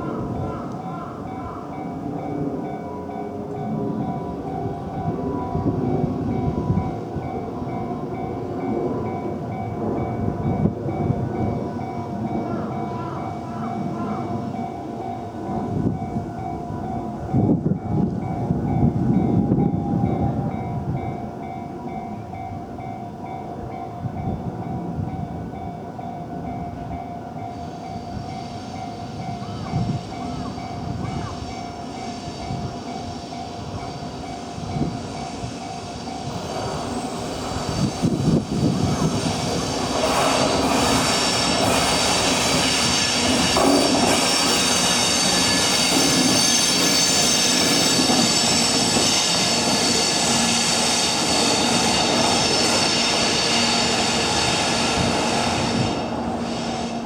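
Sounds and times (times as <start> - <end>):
crossing warning bell ringing: 0.0 - 57.0
train wheels rumbling over rails: 26.5 - 57.0
wheels squealing against rails: 27.4 - 57.0.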